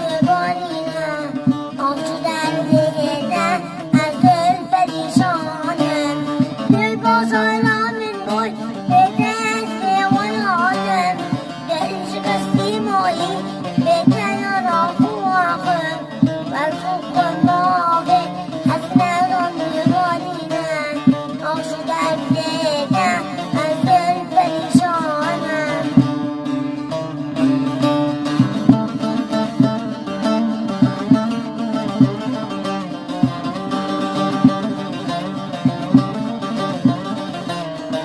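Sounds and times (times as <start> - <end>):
song with ornamented melody: 0.0 - 38.0
steady drum beat: 0.0 - 38.0.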